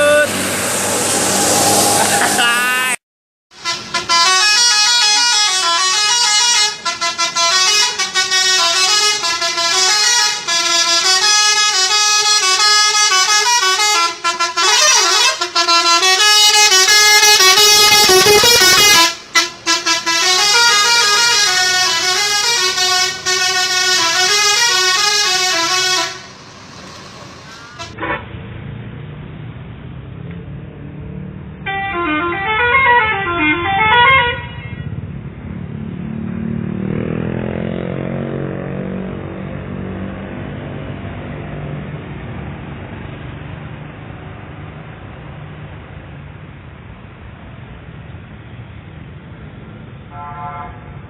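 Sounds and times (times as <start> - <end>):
bus musical horn: 3.6 - 26.5, 27.6 - 28.0, 31.6 - 34.9, 50.1 - 51.0.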